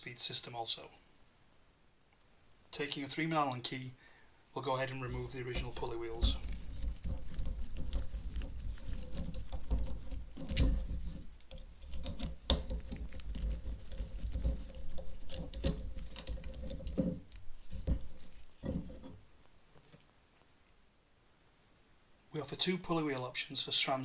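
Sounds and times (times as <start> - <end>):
scratchy handling sounds: 4.6 - 20.5.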